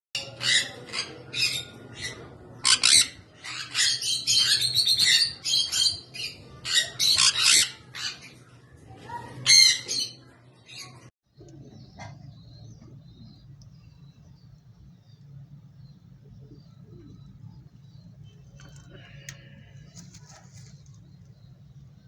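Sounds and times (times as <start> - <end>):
lovebirds screeching and chattering: 0.2 - 8.5, 9.4 - 22.0
steady low hum: 11.3 - 22.0.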